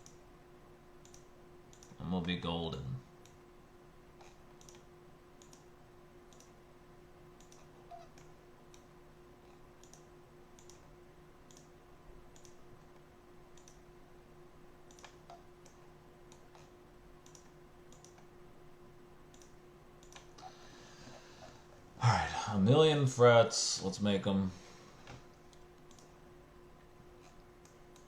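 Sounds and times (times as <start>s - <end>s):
computer mouse clicks: 0.0s - 0.2s, 1.0s - 2.4s, 3.2s - 3.4s, 4.2s - 5.7s, 6.3s - 6.6s, 7.4s - 10.9s, 11.5s - 11.7s, 12.3s - 13.9s, 14.9s - 18.3s, 19.3s - 20.5s, 25.0s - 26.2s, 27.2s - 28.0s
low electrical hum: 0.0s - 28.0s.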